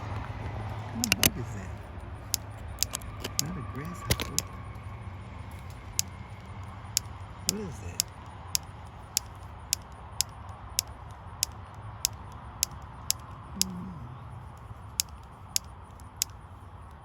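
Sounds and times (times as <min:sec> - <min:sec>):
insect clicking: 0:00.1 - 0:04.9, 0:05.5 - 0:17.0.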